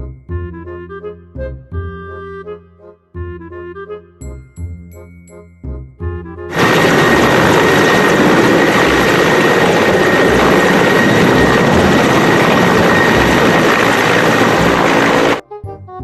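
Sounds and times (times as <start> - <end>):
loud machine rush: 6.5 - 15.4
thin high whine: 6.5 - 15.4.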